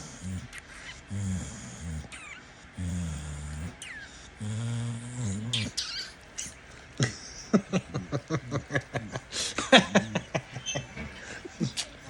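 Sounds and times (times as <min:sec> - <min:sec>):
person laughing: 0:07.0 - 0:12.0.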